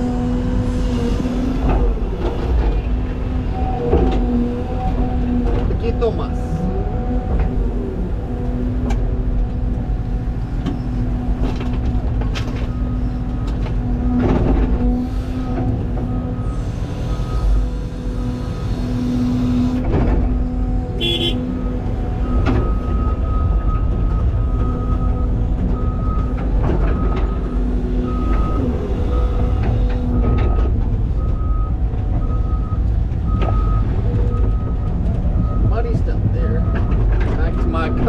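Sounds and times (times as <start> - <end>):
excavator engine and hydraulics: 0.0 - 38.0
clunks: 7.2 - 38.0.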